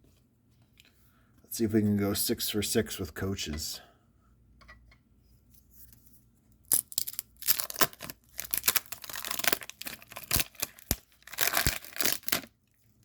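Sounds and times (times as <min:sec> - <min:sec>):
paper wrapper tearing and crinkling: 0:06.7 - 0:12.6.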